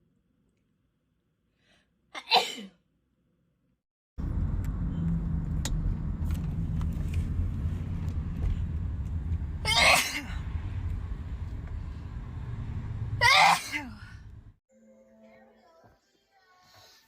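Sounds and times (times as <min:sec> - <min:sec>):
girl sneezing: 0:02.2 - 0:02.8, 0:09.7 - 0:10.4, 0:13.2 - 0:14.0
low rumble: 0:04.2 - 0:13.2.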